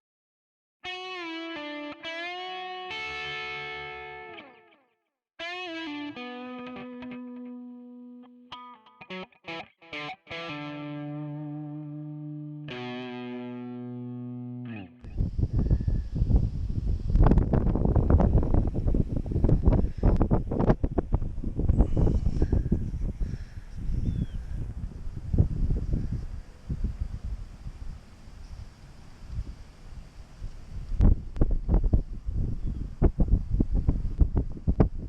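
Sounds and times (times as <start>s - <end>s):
distorted electric guitar music: 0.8s - 4.8s, 5.4s - 15.2s
wind buffeting microphone: 15.0s - 35.0s.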